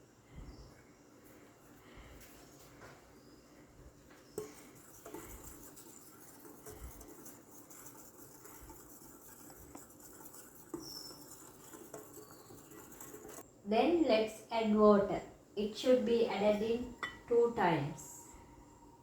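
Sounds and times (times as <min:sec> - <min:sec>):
utensil stirring flour in bowl: 0:04.2 - 0:13.5.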